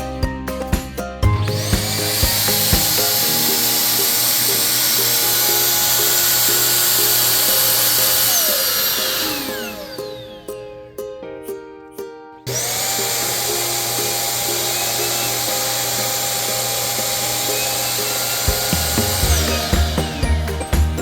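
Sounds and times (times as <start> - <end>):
background music: 0.0 - 21.0
vacuum motor whining suction: 1.3 - 10.6, 12.5 - 21.0.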